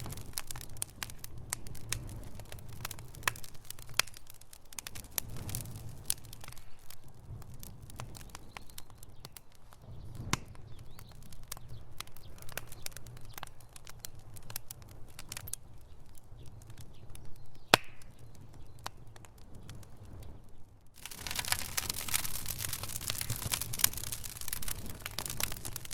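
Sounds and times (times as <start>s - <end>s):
low rumble of flame: 0.0s - 25.9s
wood fire crackling and popping: 0.0s - 25.9s.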